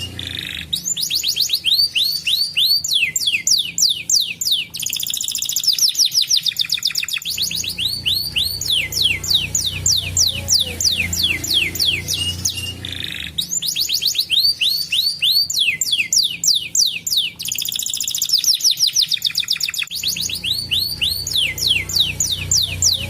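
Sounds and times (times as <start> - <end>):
canary singing whistles and trills: 0.0 - 23.0.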